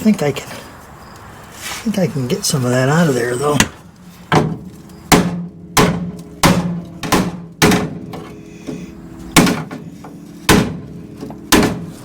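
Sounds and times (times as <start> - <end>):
hammer striking steel: 9.4 - 12.0.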